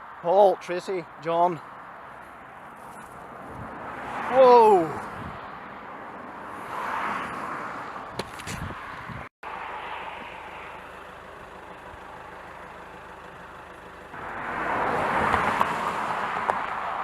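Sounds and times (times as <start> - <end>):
road vehicle passing: 1.0 - 17.0.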